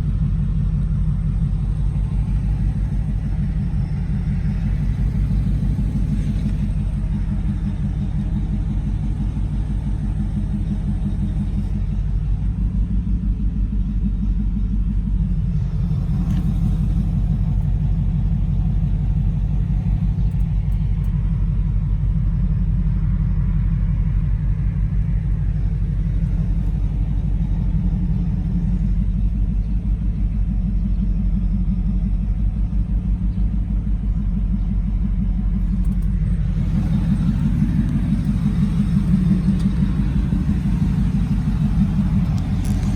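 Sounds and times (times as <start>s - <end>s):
truck engine idling: 0.0s - 42.9s.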